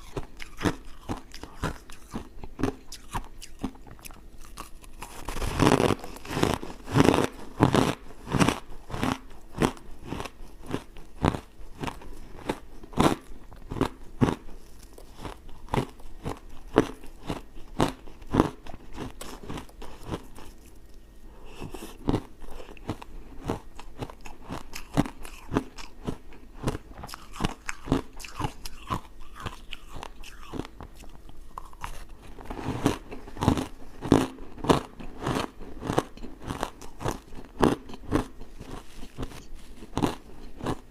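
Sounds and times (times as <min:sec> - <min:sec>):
person crunching ice: 0:00.0 - 0:02.3, 0:04.4 - 0:20.7, 0:31.6 - 0:40.8.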